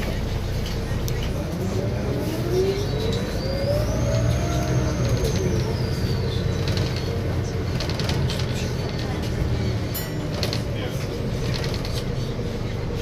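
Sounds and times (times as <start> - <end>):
bus diesel engine rumble: 0.0 - 13.0
gearbox whine: 0.8 - 8.7.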